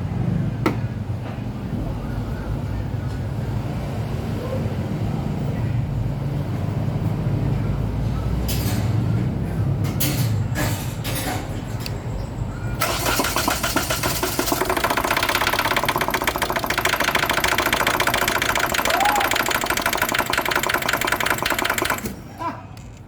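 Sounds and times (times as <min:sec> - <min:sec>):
engine cranking by starter motor: 0:12.8 - 0:22.4.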